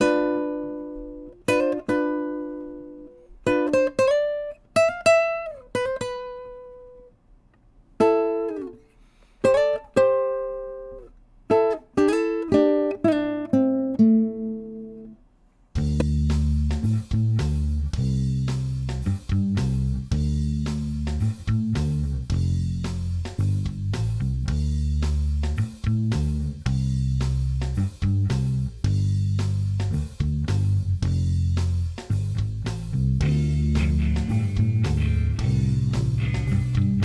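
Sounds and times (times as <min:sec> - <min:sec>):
guitar plucked notes and chords: 0:00.0 - 0:07.1, 0:09.5 - 0:15.2, 0:15.8 - 0:37.0
low bass line: 0:15.8 - 0:37.0.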